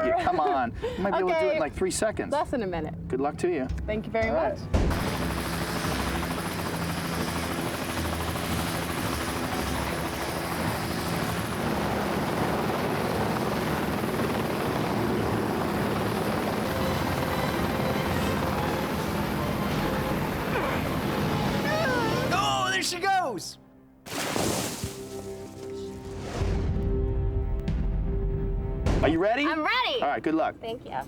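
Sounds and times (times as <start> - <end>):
helicopter rotor and engine: 0.0 - 22.8.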